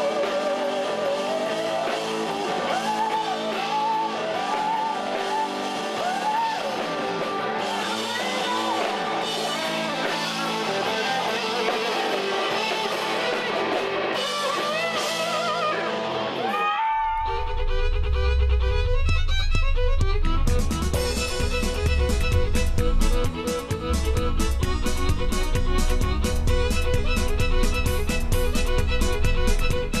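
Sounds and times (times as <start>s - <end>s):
music with guitar and fiddle: 0.0s - 30.0s
heavy low rumble: 17.1s - 30.0s.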